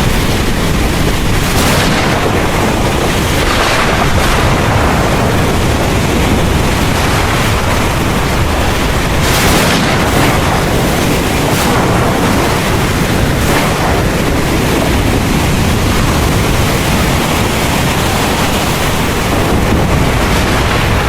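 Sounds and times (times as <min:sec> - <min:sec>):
heavy rain pouring: 0:00.0 - 0:21.0.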